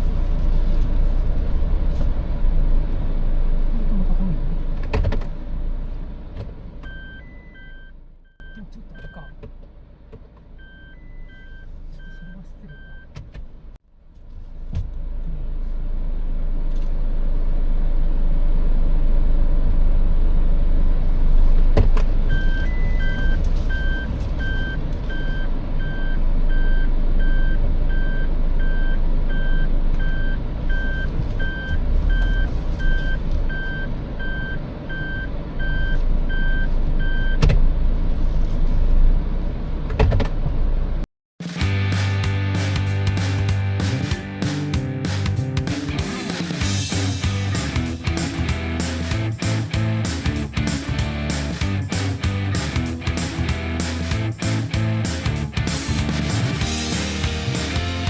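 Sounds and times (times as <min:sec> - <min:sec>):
vehicle engine rumbling: 0:00.0 - 0:12.8, 0:13.5 - 0:58.0
reversing warning beeps: 0:06.8 - 0:09.4, 0:10.6 - 0:13.1, 0:22.3 - 0:37.4.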